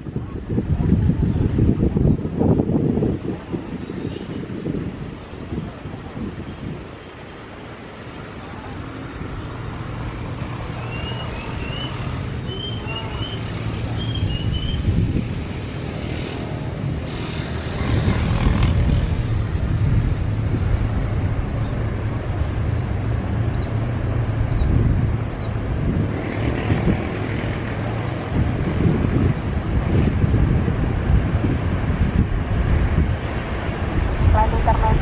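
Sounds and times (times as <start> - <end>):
engine rumble: 4.7 - 35.0.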